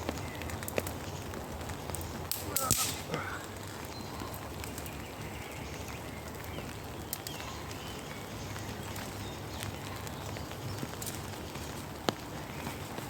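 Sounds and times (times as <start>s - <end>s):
rain pattering on a tarp: 0.0s - 13.0s.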